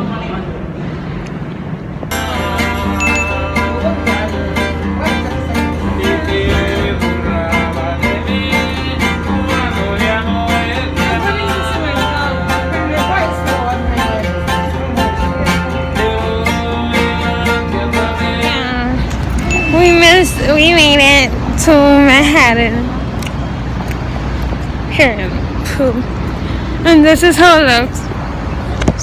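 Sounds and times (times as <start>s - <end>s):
upbeat song with plucked guitar: 2.1s - 21.3s.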